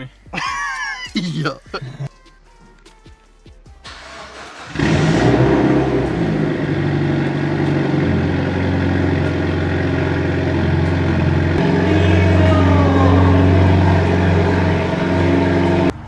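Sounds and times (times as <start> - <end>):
vehicle engine starting and running: 3.8 - 16.0.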